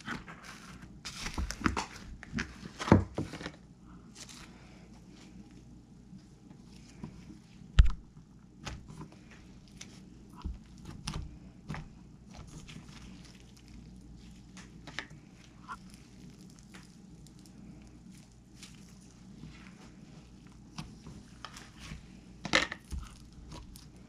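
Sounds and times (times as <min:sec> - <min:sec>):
slime squelching by hand: 0:06.6 - 0:24.0.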